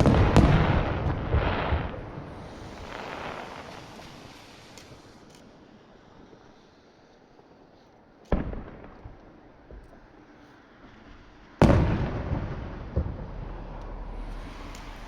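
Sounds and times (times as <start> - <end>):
firework shells bursting: 0.0 - 5.7, 11.6 - 15.0
small firework pops: 0.0 - 6.7, 7.4 - 15.0.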